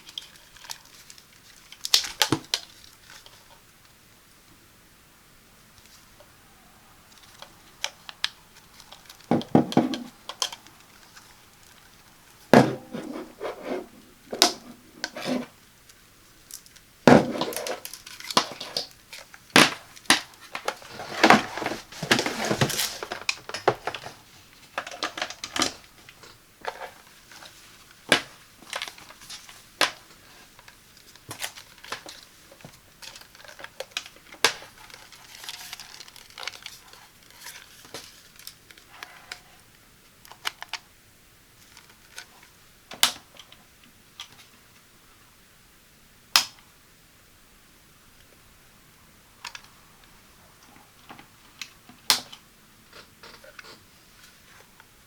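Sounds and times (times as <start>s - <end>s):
packaging crinkling and rustling: 0.0s - 3.6s, 7.0s - 39.5s
hands tapping and knocking: 12.6s - 14.8s.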